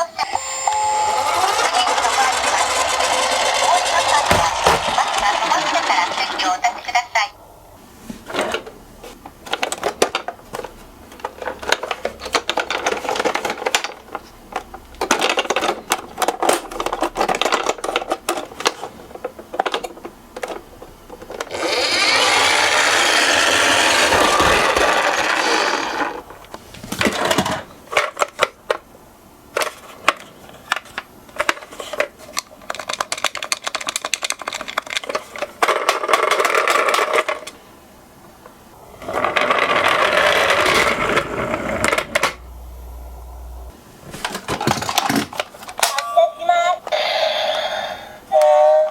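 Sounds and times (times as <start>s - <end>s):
whirring rattle: 1.1s - 6.7s, 21.4s - 26.3s
toy cars clicking and clattering: 1.4s - 6.7s, 11.1s - 20.6s, 21.2s - 26.2s, 29.6s - 37.6s, 39.0s - 42.3s.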